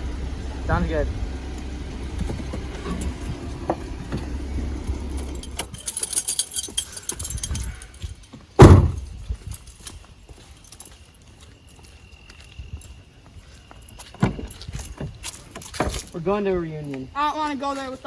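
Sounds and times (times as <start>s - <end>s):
low rumble: 0.0s - 6.1s
small metal objects jingling: 4.4s - 16.2s
loud thump: 8.6s - 9.2s.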